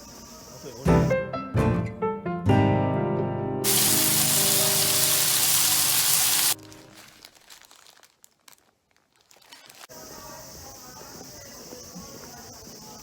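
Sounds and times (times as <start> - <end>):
soft piano music: 0.9 - 7.1
loud steady hiss: 3.6 - 6.6.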